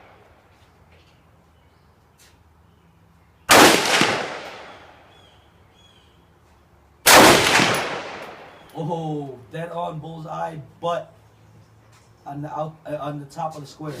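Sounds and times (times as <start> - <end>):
rifle shots echoing: 3.5 - 5.1, 7.0 - 8.7.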